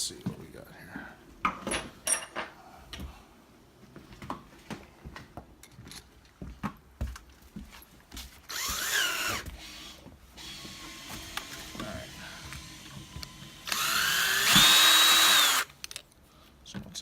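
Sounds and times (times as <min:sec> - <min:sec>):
cordless drill whining: 0:08.5 - 0:15.7.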